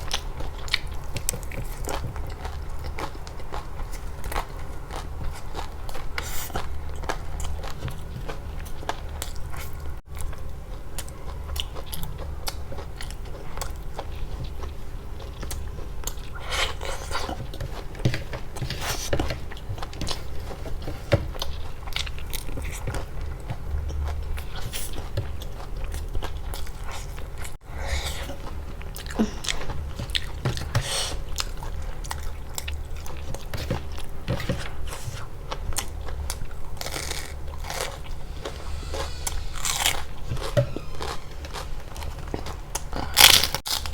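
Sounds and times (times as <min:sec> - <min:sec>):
person eating crunching and chewing: 0:00.0 - 0:43.9.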